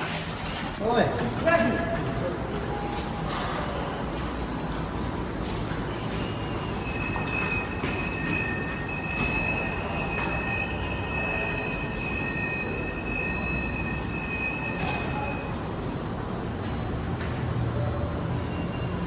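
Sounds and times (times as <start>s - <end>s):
subway train rumble: 0.0s - 19.0s
train wheel squeal: 5.5s - 15.7s, 17.7s - 19.0s.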